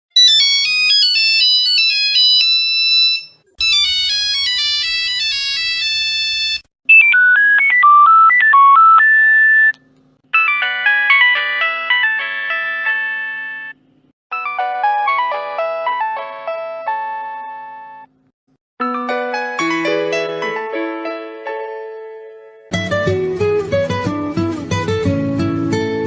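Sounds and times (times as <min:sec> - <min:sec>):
mobile phone ringtones: 0:00.2 - 0:09.7, 0:10.3 - 0:15.3.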